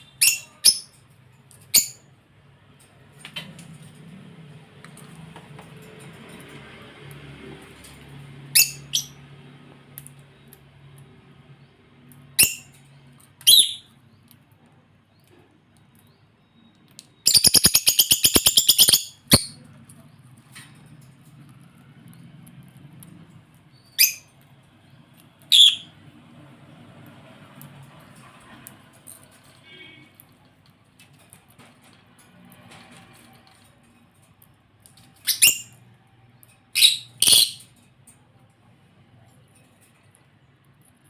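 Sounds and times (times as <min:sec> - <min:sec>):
lovebirds shrill calls: 0:17.2 - 0:19.6, 0:25.5 - 0:25.9, 0:36.8 - 0:37.6.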